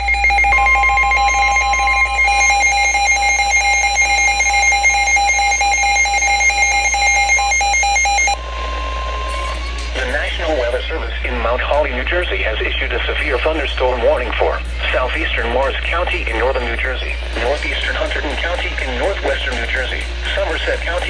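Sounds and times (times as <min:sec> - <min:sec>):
rapidly alternating electronic alert tones: 0:00.0 - 0:08.4
steady electronic tone: 0:00.0 - 0:10.8.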